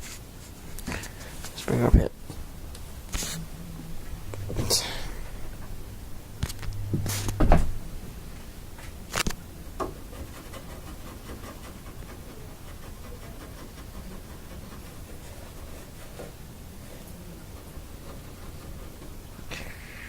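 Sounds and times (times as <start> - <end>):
faint rustling and scratching: 0.0 - 5.8, 6.4 - 20.0
thumps: 4.0 - 8.0.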